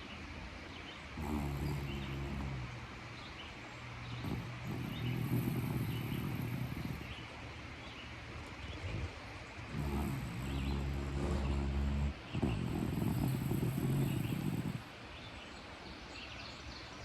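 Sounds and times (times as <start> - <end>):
dog snoring: 1.2 - 3.0, 4.1 - 7.3, 8.9 - 14.9.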